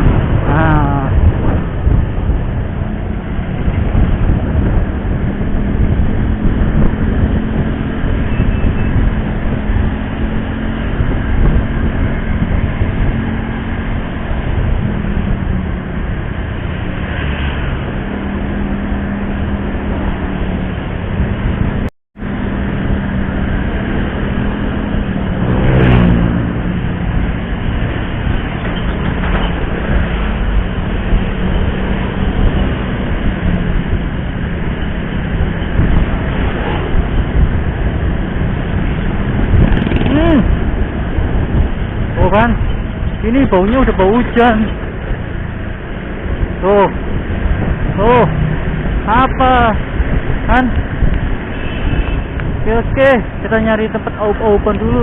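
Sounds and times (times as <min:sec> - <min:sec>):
road and wind noise: 0:00.0 - 0:55.0
motorcycle engine running: 0:22.2 - 0:45.8.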